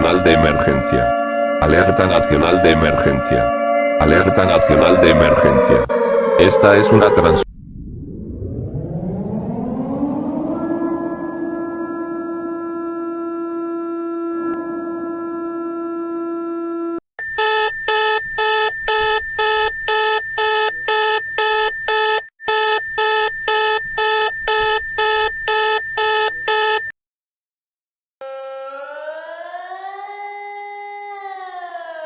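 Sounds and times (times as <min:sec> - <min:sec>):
siren rising: 0:00.0 - 0:26.9, 0:28.2 - 0:32.0
rapid beeping alarm: 0:17.2 - 0:26.9.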